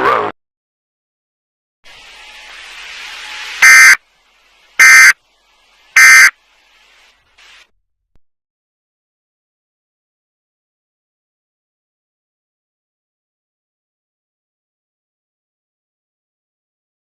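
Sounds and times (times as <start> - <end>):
harsh digital data bursts: 2.2 - 4.0, 4.8 - 5.2, 6.0 - 6.4.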